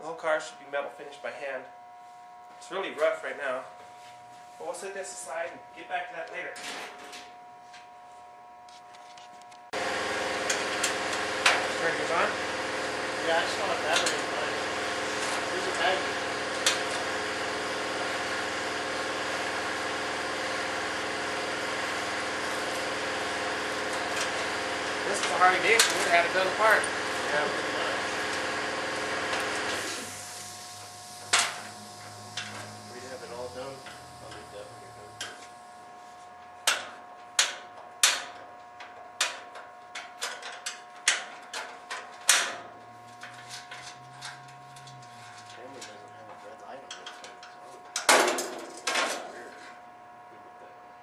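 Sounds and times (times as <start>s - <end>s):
motor humming: 9.7s - 36.1s, 42.7s - 46.3s
hand tools clanking on metal: 13.9s - 14.4s, 25.1s - 27.2s.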